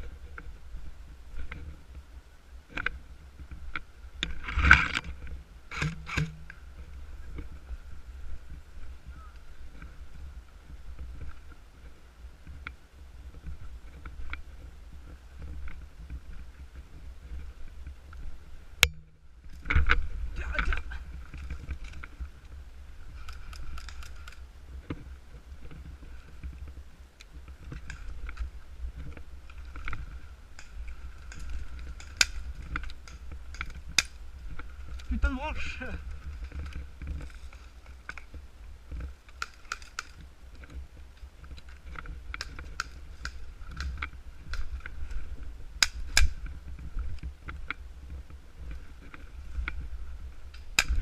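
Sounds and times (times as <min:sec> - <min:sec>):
rustling through brush: 0:00.0 - 0:51.0.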